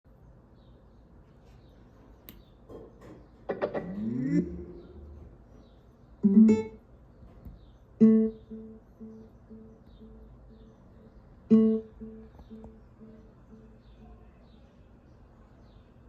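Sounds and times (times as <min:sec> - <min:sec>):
plucked guitar notes through speaker: 0:03.5 - 0:05.2, 0:06.2 - 0:06.8, 0:08.0 - 0:14.2.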